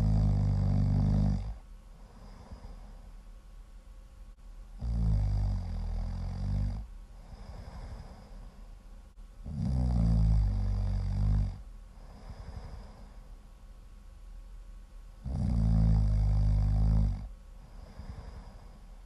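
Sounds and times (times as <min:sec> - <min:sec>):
loud pitched snores: 0:00.0 - 0:01.6, 0:04.8 - 0:08.2, 0:09.4 - 0:13.0, 0:15.2 - 0:18.7.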